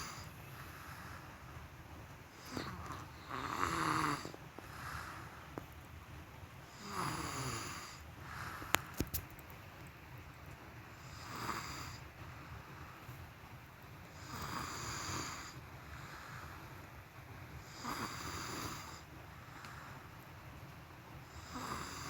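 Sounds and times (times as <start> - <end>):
person snoring: 2.4 - 5.2, 6.7 - 8.0, 11.0 - 12.0, 14.2 - 15.6, 17.7 - 19.0, 21.3 - 22.0.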